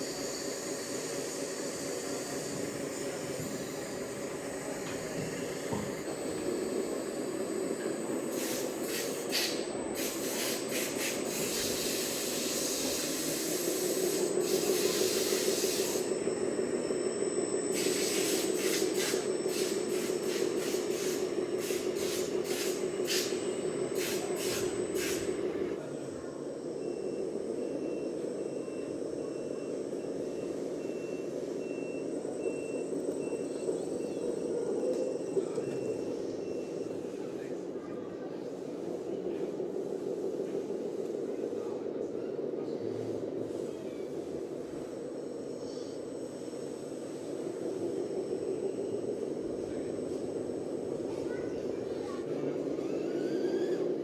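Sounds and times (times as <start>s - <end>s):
motor hum: 0.0s - 36.9s, 44.3s - 54.0s
hissing bursts: 8.3s - 16.1s, 17.7s - 25.4s.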